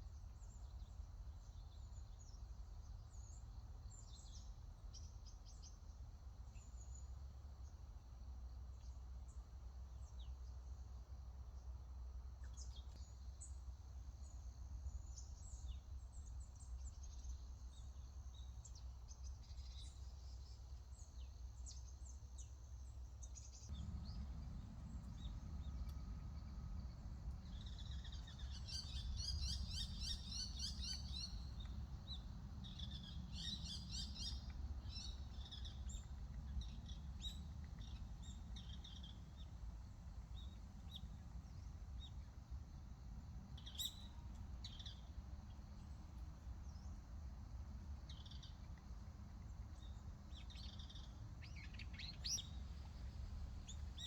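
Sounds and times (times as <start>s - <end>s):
songbirds chirping and trilling: 12.4s - 54.0s
low wind rumble: 13.8s - 54.0s.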